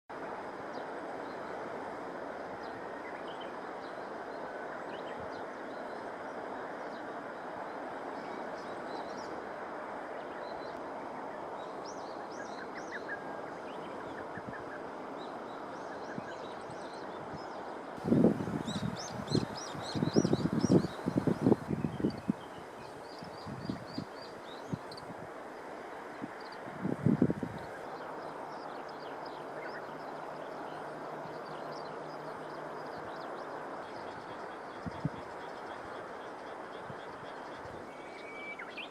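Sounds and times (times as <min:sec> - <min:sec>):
outdoor background hiss: 0:00.1 - 0:38.9
wind buffeting microphone: 0:16.1 - 0:25.4, 0:26.1 - 0:27.9, 0:32.9 - 0:38.0.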